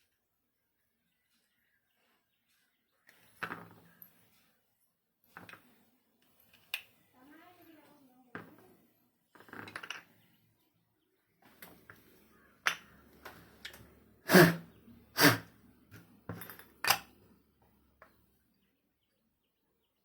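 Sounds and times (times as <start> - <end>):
tools clicking and knocking: 12.6 - 13.9, 15.9 - 17.2.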